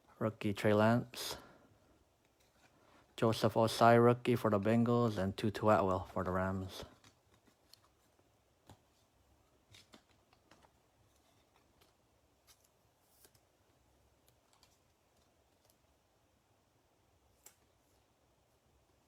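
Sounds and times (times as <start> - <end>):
trading cards being shuffled: 6.6 - 13.6, 14.2 - 15.9.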